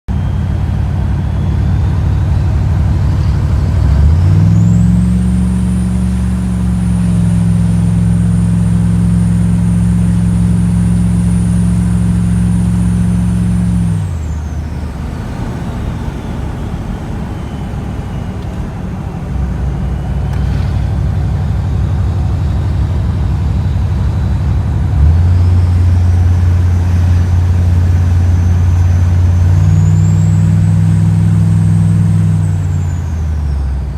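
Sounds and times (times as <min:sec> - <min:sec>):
turbo whistle: 0:00.1 - 0:21.0
diesel engine revving: 0:00.1 - 0:33.9.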